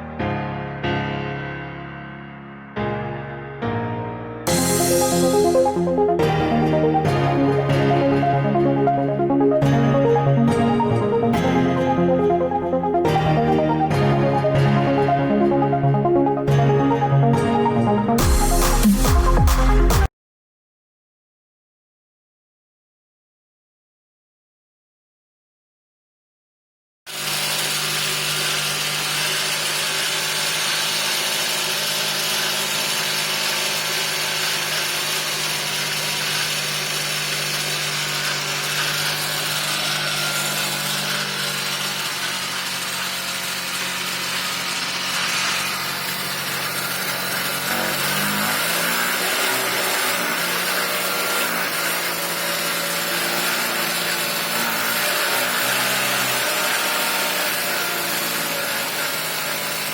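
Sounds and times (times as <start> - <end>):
moped engine running: 27.1 - 56.8.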